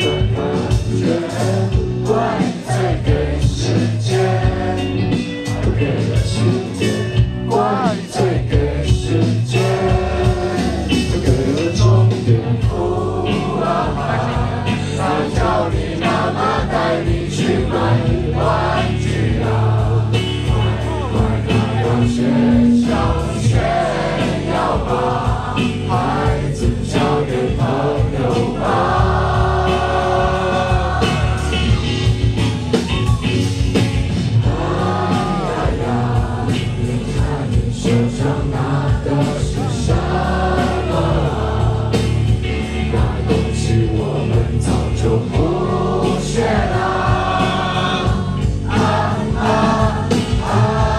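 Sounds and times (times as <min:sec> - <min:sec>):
choir of voices: 0:00.0 - 0:50.9
indie rock band playing live: 0:00.0 - 0:50.9.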